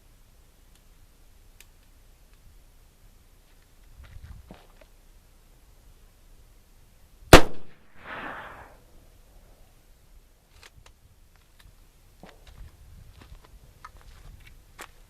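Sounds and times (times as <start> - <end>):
rifle shot: 7.3 - 8.8
soft rushing noise: 7.9 - 9.7.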